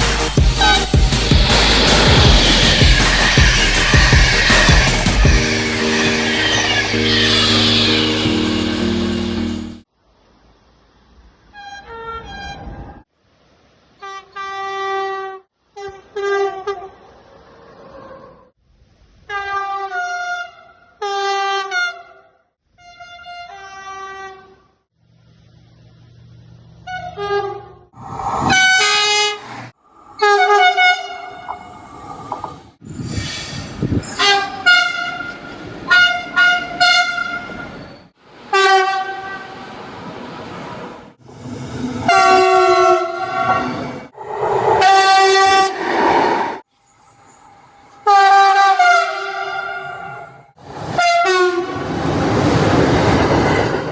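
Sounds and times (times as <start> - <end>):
trains rumbling and clattering: 0.0 - 9.8, 28.0 - 46.6, 49.4 - 53.9
train horn blasts: 0.6 - 9.8, 34.1 - 37.6, 38.5 - 39.6, 42.0 - 43.8, 44.8 - 45.8, 48.0 - 51.8.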